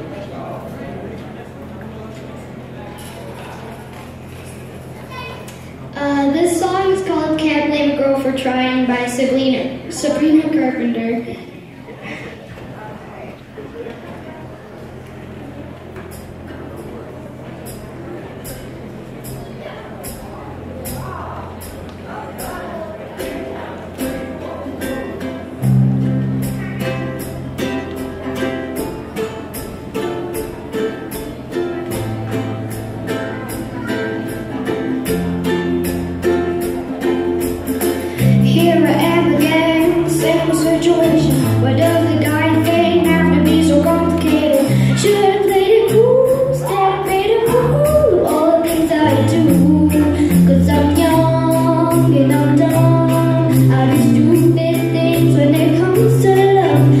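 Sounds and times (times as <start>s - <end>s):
bass line: 15.4s - 57.0s
woman singing: 38.2s - 57.0s.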